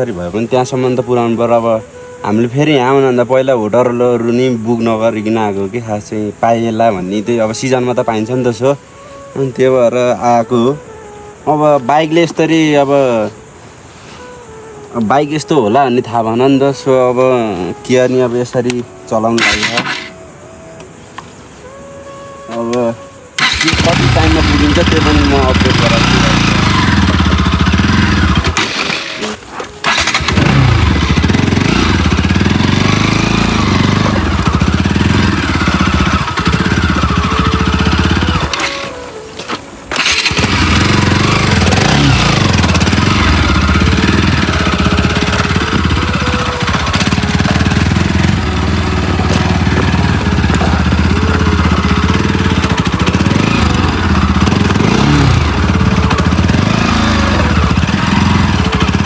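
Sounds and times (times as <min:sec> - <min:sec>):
motorcycle engine revving: 0:19.4 - 0:20.4, 0:23.4 - 0:59.0.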